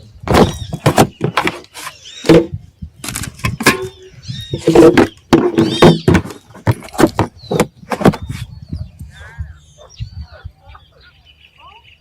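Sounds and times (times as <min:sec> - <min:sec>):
sharp knocks and clatter: 0:02.3 - 0:08.2.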